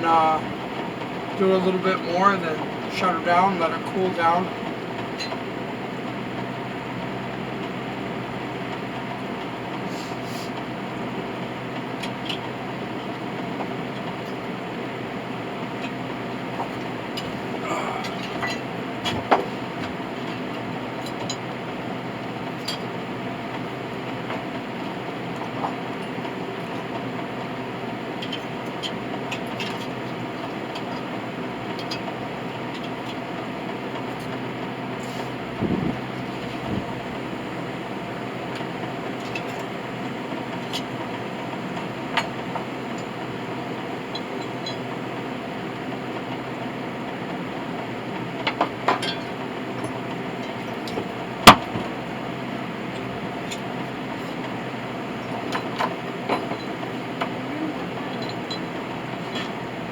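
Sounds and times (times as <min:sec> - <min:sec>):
steady tonal hum: 0:14.2 - 0:59.9.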